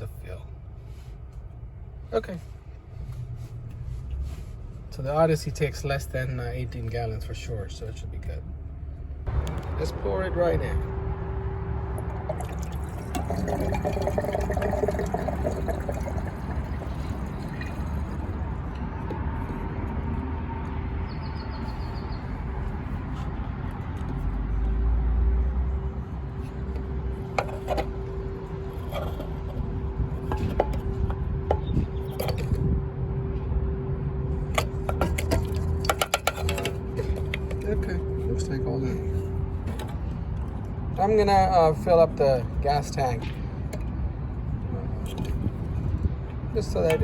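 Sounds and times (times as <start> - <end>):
steady hum: 8.8 - 20.0, 25.3 - 44.6
liquid pouring into fuel filler: 11.9 - 18.4.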